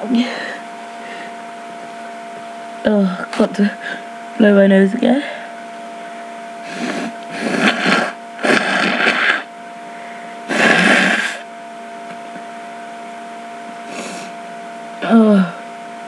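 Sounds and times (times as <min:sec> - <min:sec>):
person blowing nose: 0:06.6 - 0:09.5, 0:10.5 - 0:11.4, 0:13.9 - 0:14.3.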